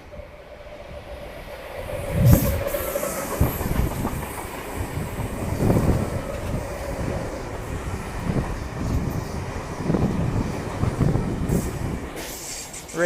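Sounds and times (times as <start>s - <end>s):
train rumble: 0.0s - 13.0s
train wheels clacking over rail joints: 2.4s - 7.0s.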